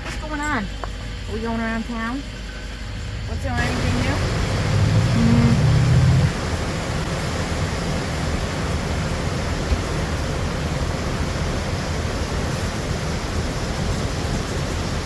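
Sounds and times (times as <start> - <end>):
waterfall roaring: 3.6 - 15.0.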